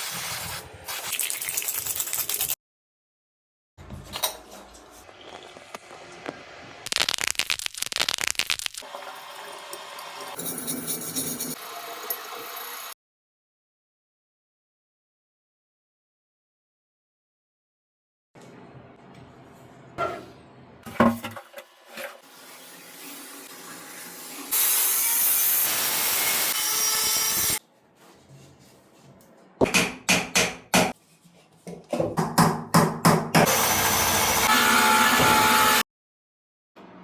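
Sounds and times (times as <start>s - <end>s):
rubbing or scraping strokes: 27.6s - 29.2s.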